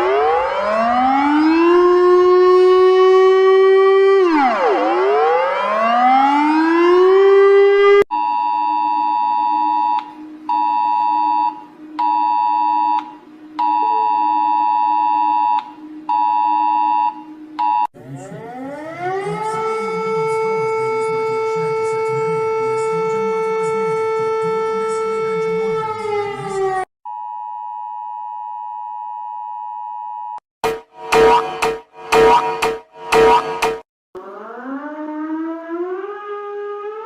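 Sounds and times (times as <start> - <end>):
siren wailing: 0.0 - 26.9, 30.6 - 37.0
pulsing multi-note alert tone: 30.6 - 33.8.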